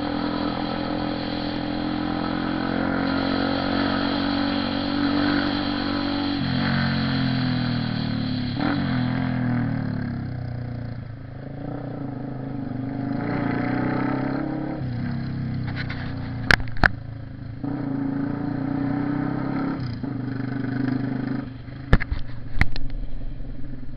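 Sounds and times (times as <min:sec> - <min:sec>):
sharp exhaust cracks: 0:00.0 - 0:11.3
motorcycle engine revving: 0:00.0 - 0:23.9.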